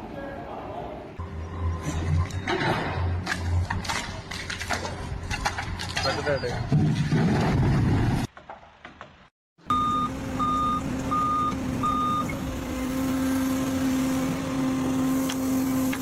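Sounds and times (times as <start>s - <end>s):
reversing alarm beeping: 9.7s - 12.4s
engine running hum: 9.7s - 16.0s.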